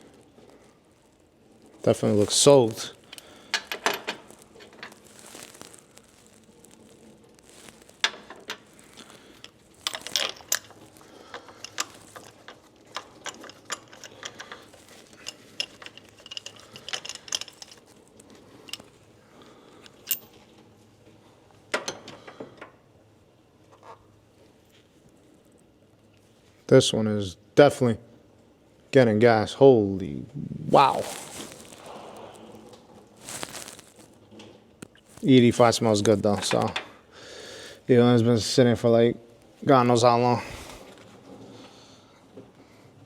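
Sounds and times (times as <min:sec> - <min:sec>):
metal tools clinking: 0:09.8 - 0:17.9, 0:20.0 - 0:20.4.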